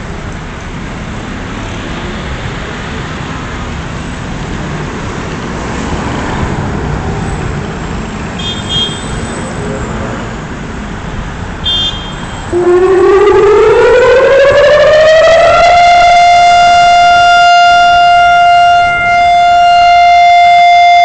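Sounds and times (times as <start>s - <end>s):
road traffic noise: 0.0s - 21.0s
civil defence siren wail: 12.4s - 21.0s.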